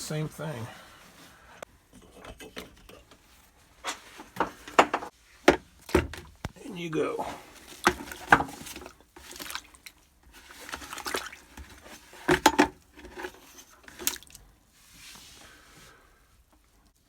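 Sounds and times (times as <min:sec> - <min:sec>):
webbing sloshing in bucket of water: 0:07.2 - 0:14.5
water splashes: 0:07.8 - 0:11.9.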